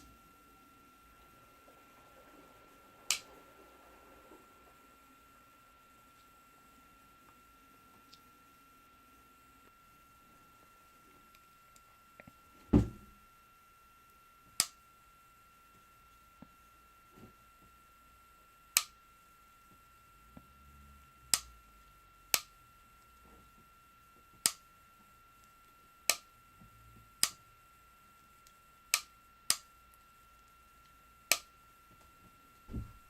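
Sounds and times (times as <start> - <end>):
sharp single clicks: 18.8 - 19.0.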